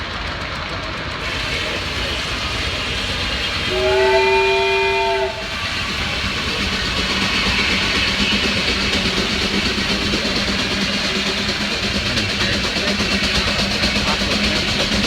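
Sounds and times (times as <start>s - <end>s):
steam machinery running: 0.0s - 15.0s
steam whistle chord: 3.7s - 5.5s.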